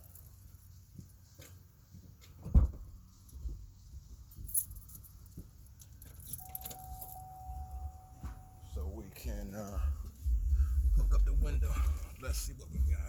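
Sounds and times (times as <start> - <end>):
keys jangling: 4.3 - 8.6
steady electronic tone: 6.4 - 12.0.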